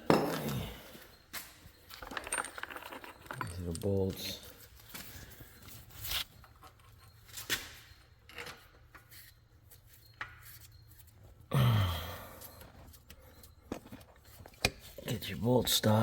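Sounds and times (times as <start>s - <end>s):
metal parts rubbing: 1.7s - 11.4s.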